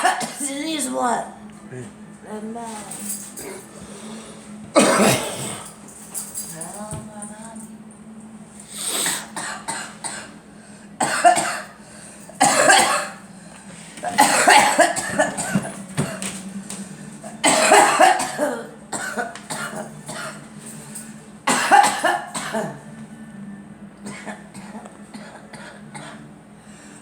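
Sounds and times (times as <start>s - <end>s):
girl coughing: 0.0s - 0.6s, 4.8s - 5.7s, 9.1s - 10.3s, 11.0s - 11.8s, 12.4s - 13.2s, 14.0s - 16.3s, 17.4s - 20.4s, 21.5s - 22.8s
steady low hum: 0.0s - 27.0s.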